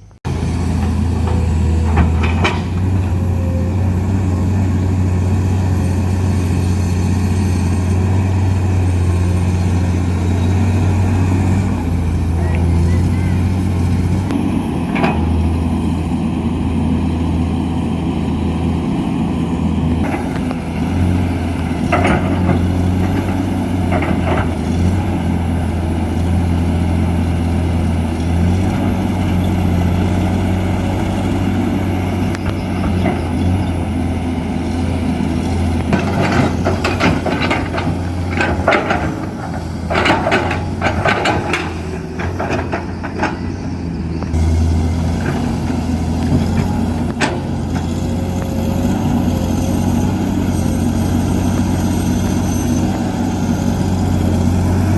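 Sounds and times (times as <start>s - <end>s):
heavy diesel machinery droning: 0.0s - 54.9s
clunks and clatter: 0.8s - 3.4s, 21.5s - 25.0s, 35.4s - 44.4s, 45.2s - 48.5s.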